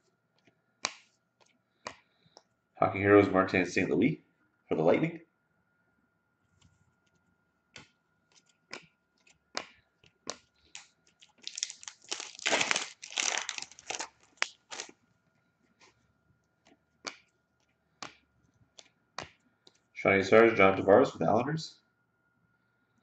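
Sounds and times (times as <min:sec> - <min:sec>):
foil wrapper tearing and crinkling: 0:10.7 - 0:15.0.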